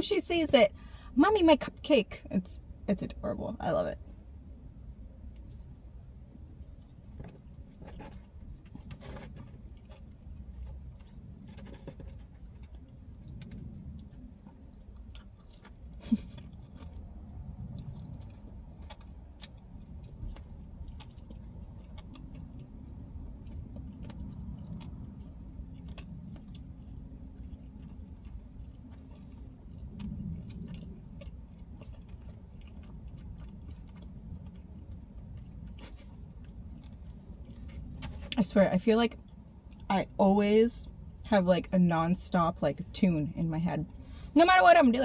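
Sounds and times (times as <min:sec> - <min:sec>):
low hum inside a car: 0:00.0 - 0:45.0
person chewing: 0:04.7 - 0:38.4.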